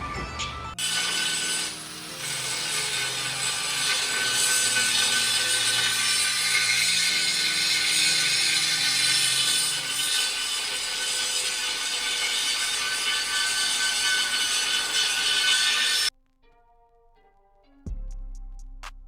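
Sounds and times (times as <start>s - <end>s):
power tool grinding metal: 0.8s - 16.1s.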